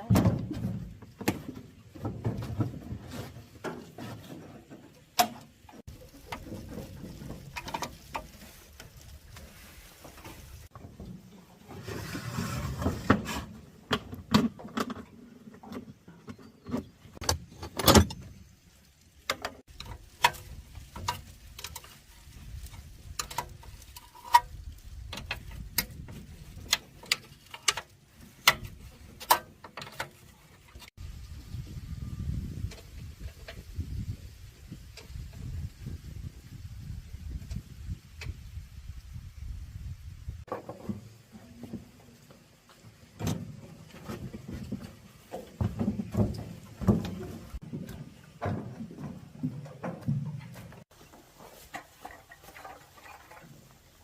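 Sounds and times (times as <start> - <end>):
scraping noise: 11.7 - 13.6.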